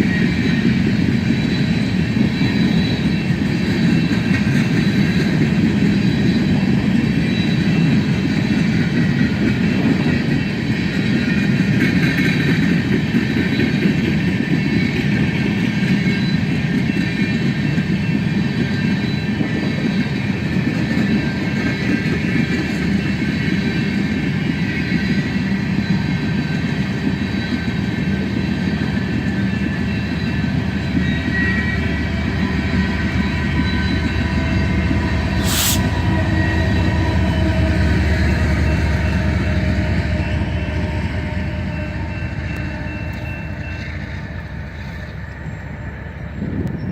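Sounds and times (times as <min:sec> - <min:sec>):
high-pitched wheel squealing: 0:35.3 - 0:36.1.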